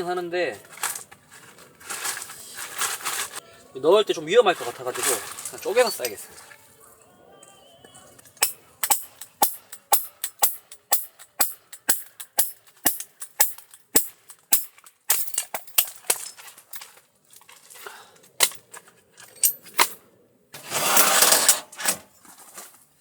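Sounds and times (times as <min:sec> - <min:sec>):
wood clattering: 0:04.5 - 0:06.4, 0:08.2 - 0:22.8.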